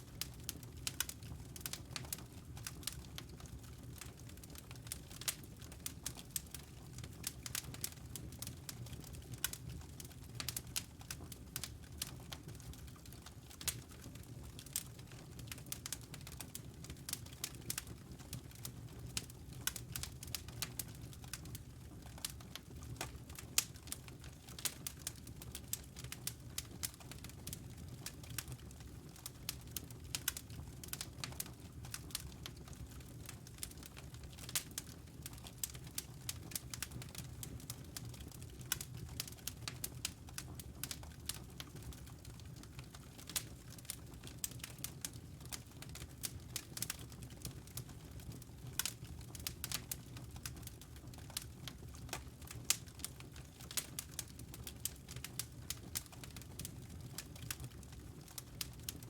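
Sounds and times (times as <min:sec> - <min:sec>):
fire crackling: 0:00.0 - 0:59.0.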